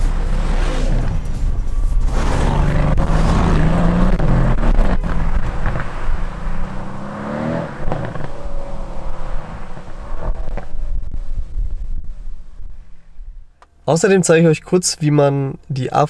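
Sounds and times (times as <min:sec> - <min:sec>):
car engine revving: 0:00.0 - 0:11.1
exhaust crackles: 0:00.0 - 0:14.8.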